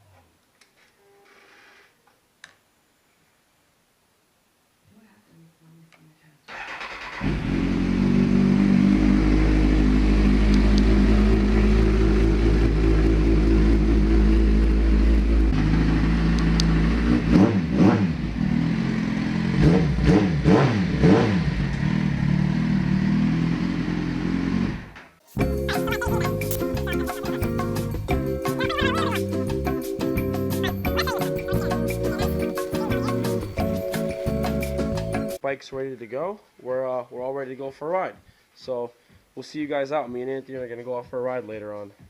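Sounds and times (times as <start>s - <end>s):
motorcycle engine idling and revving: 6.6s - 30.4s.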